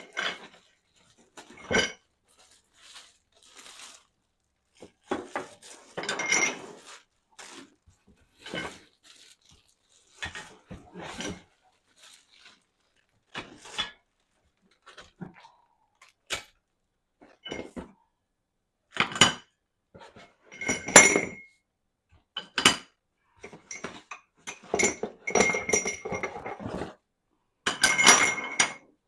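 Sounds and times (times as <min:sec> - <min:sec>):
metal parts clinking and clanking: 0:05.1 - 0:06.8.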